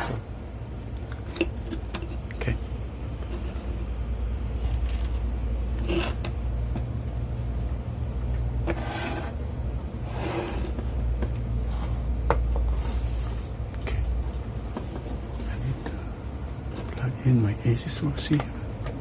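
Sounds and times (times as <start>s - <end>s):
rubbing and scraping handling: 1.1s - 6.4s, 10.0s - 15.9s.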